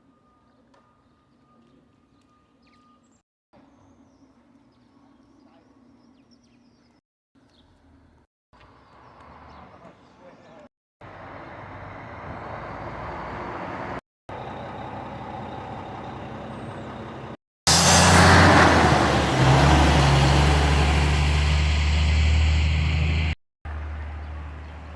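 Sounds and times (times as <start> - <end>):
outdoor background noise: 0.0 - 24.9
large vehicle engine running: 11.1 - 24.9
burst of hiss: 17.7 - 19.6.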